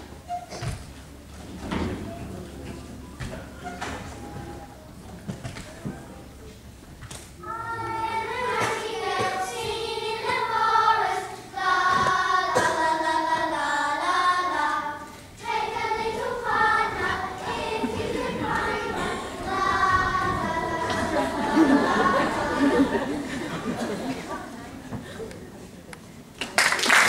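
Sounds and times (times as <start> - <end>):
children's choir singing: 7.4 - 25.0.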